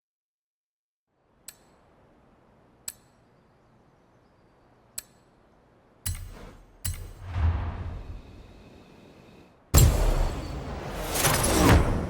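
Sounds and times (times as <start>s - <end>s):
faint background hiss: 1.1s - 9.8s
sharp metallic clicks: 2.8s - 3.2s, 4.9s - 5.4s, 6.0s - 7.4s.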